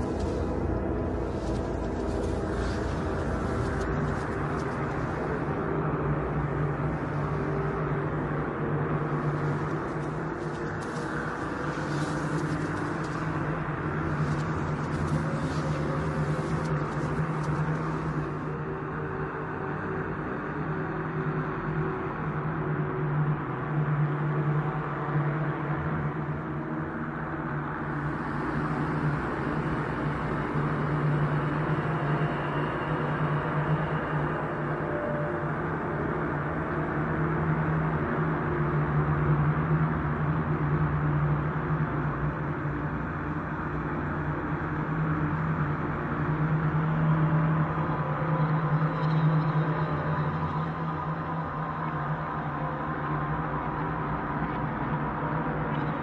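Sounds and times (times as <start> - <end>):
low rumbling drone: 0.0 - 18.5
constant low hum: 0.0 - 56.0
dark rumbling drone: 0.0 - 56.0.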